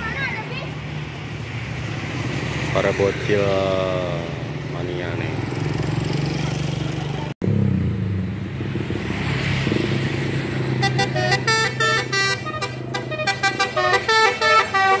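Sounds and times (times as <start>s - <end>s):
bus engine running: 9.6s - 15.0s
multi-tone bus horn tune: 10.7s - 15.0s.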